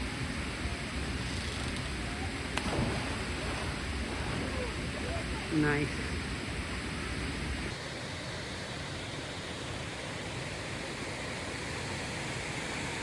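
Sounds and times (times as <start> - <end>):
waterfall rushing: 1.9 - 7.8.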